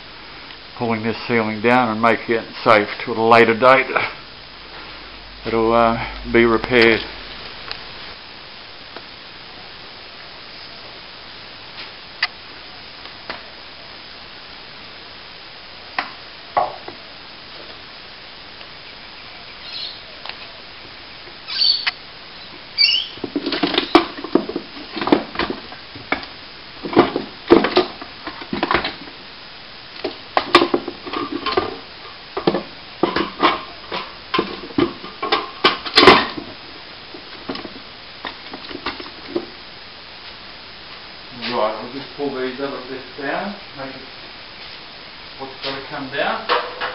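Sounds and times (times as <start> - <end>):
plasterboard debris knocking and scraping: 23.2 - 26.2, 26.8 - 29.2, 30.0 - 31.8, 32.4 - 36.6.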